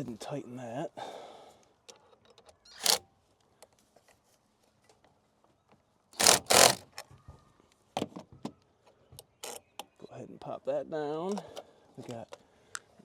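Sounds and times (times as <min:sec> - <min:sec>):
hand tool scraping metal: 0:02.8 - 0:03.0, 0:06.2 - 0:06.8.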